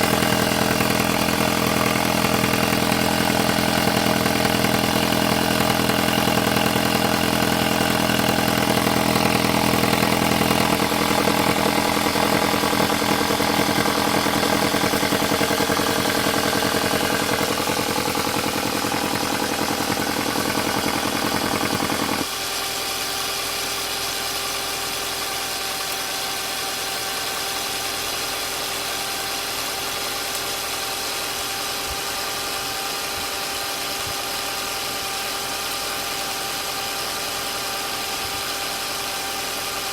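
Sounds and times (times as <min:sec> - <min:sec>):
car engine idling: 0:00.0 - 0:22.3
engine knocking: 0:00.0 - 0:39.9.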